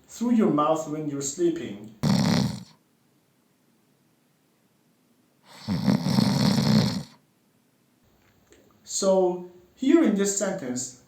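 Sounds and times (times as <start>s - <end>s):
person snoring: 2.0s - 2.8s, 5.5s - 7.2s.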